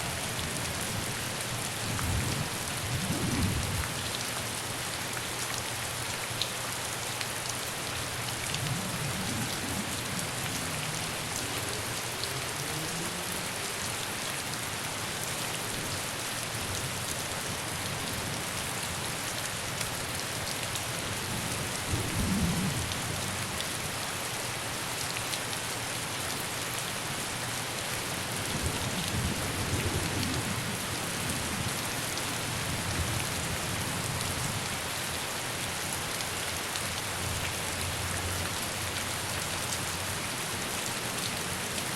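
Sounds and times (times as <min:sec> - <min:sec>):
heavy rain hissing: 0:07.0 - 0:20.0.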